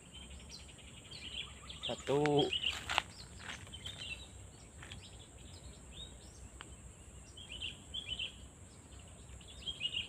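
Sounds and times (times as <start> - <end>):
steady high hiss: 0.0 - 10.0
scratchy bird chirps: 0.1 - 6.6.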